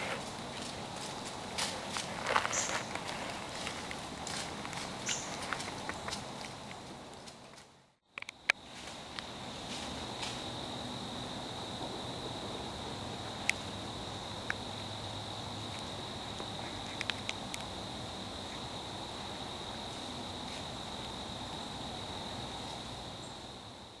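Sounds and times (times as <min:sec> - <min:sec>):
insects chirring: 0:00.0 - 0:24.0
soft outdoor hiss: 0:00.0 - 0:24.0.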